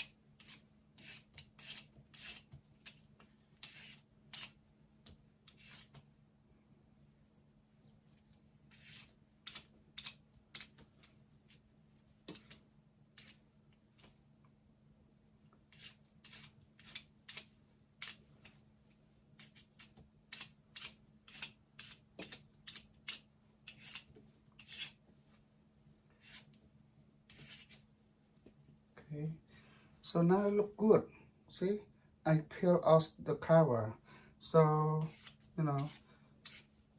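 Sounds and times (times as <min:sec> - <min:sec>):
faint steady hum: 0:00.0 - 0:36.9
blade peeling radish skin: 0:08.7 - 0:10.7.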